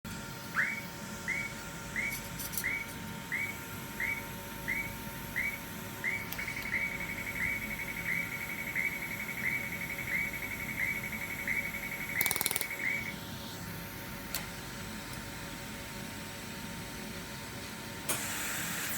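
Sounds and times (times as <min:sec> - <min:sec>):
laser welder pulsed electronic whine: 0:00.1 - 0:17.4
steady high tone: 0:00.6 - 0:13.6.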